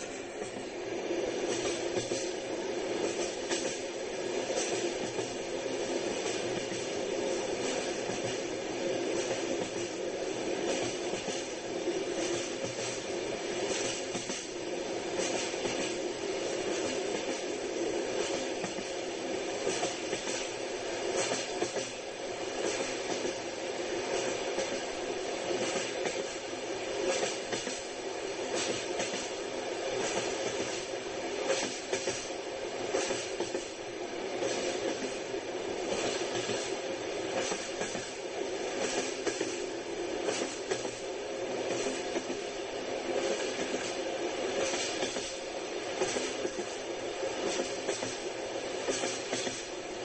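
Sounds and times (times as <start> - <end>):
train rolling rumble: 0.0 - 50.0.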